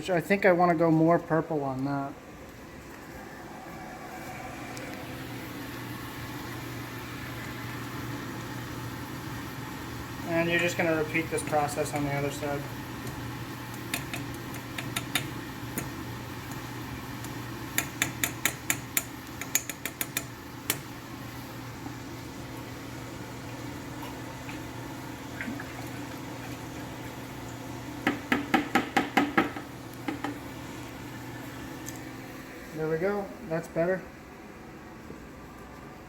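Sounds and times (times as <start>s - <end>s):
steady hum: 0.0s - 36.0s
pliers tapping metal pot rim: 13.8s - 15.9s, 17.7s - 20.8s.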